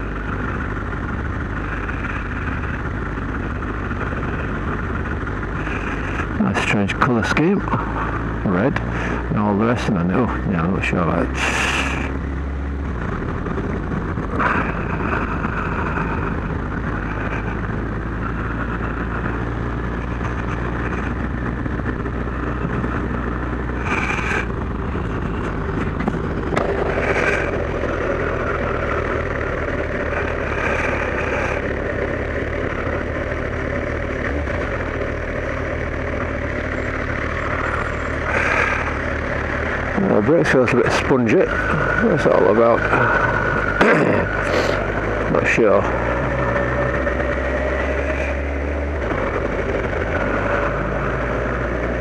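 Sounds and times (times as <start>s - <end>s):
motorcycle engine running: 0.0s - 52.0s.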